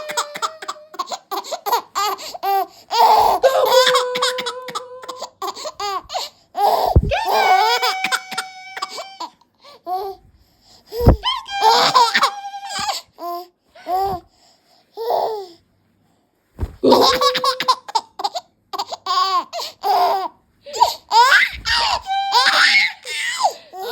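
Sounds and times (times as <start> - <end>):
baby giggling: 0.0 - 9.3, 11.0 - 13.0, 16.8 - 23.9.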